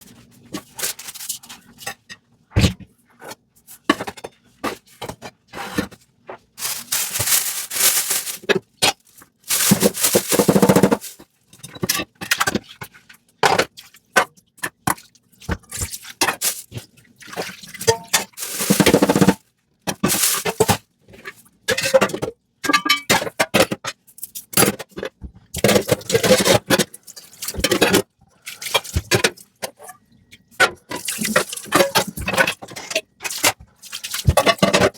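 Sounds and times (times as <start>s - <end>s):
dishes scraping and scrubbing: 30.6s - 34.9s.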